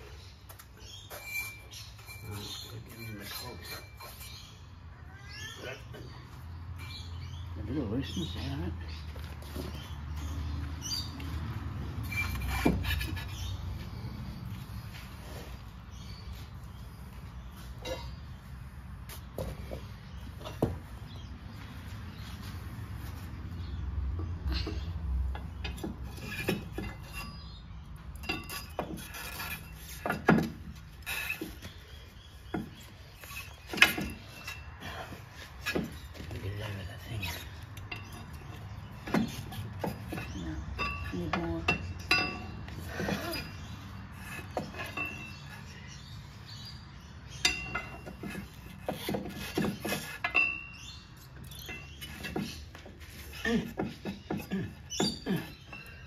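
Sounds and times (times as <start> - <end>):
metallic clinks and knocks: 24.5 - 31.6, 37.8 - 43.6, 44.5 - 45.5, 47.3 - 56.0.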